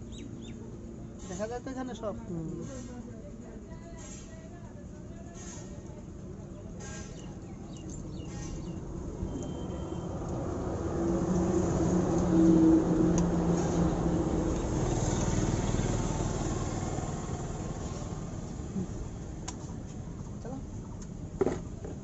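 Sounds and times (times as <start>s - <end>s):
vehicle passing by: 9.0s - 19.0s.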